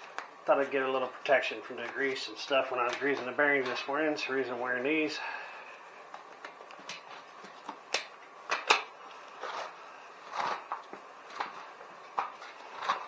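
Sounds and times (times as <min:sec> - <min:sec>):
rustling scrapes: 0:09.2 - 0:11.8.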